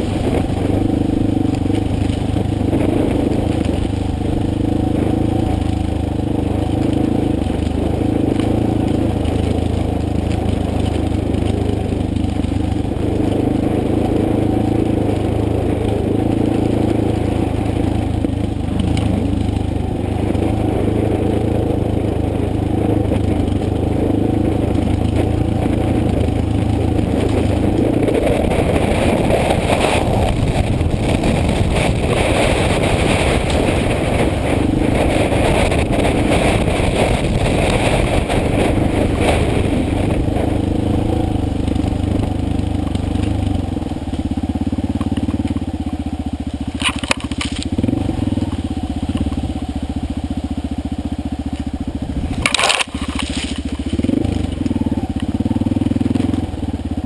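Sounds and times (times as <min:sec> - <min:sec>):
motorcycle engine running: 0:00.0 - 0:57.0
tyres on gravel: 0:00.0 - 0:57.0
clattering on rough surface: 0:52.3 - 0:54.0.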